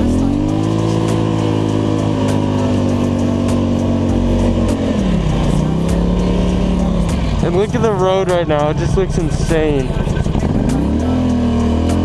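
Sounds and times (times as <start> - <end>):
atv engine at high revs: 0.0 - 12.0.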